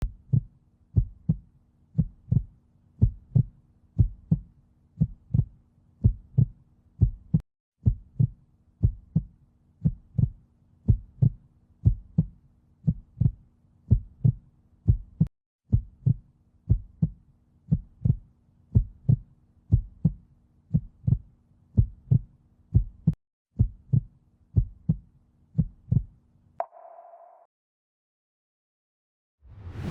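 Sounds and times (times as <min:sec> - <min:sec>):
heartbeat thumps: 0:00.0 - 0:01.4, 0:02.0 - 0:21.2, 0:21.8 - 0:25.0, 0:25.6 - 0:26.1.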